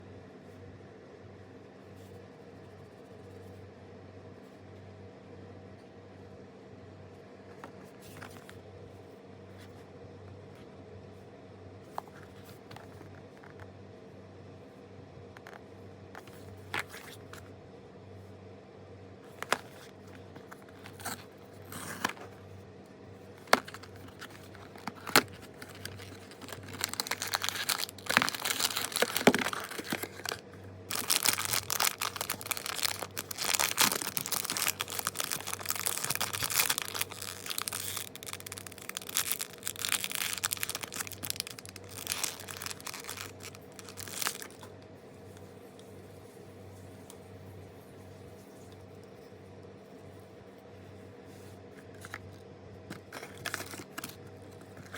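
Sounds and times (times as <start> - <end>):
plastic wrapping crinkling and tearing: 19.4 - 22.4, 23.4 - 44.7, 53.0 - 54.9
sharp packaging clicks: 23.4 - 44.7.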